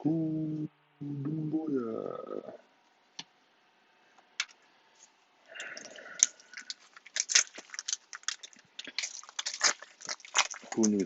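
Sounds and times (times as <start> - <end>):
card pack crackling: 5.8 - 11.0.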